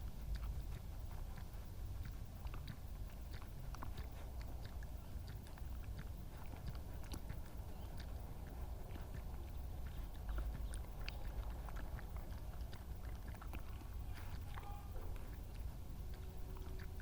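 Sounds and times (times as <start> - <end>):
badger lapping water: 0.0 - 17.0.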